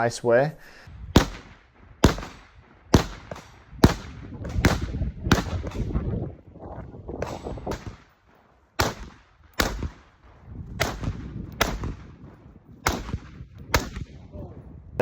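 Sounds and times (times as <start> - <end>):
rifle shots with echo: 1.1 - 6.1, 7.2 - 14.2.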